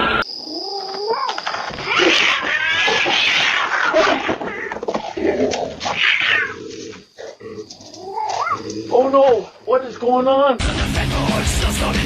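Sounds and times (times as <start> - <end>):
animal screeching: 0.5 - 9.1.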